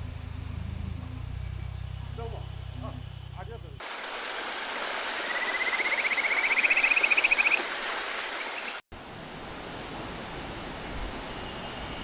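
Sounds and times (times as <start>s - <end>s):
mountain stream rushing: 3.8s - 12.0s
rapid pulsed call rising in pitch: 5.1s - 8.8s.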